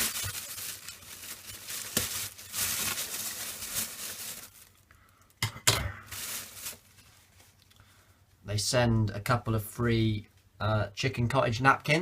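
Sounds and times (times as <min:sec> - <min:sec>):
packaging crinkling and tearing: 0:00.0 - 0:04.9, 0:06.1 - 0:07.6.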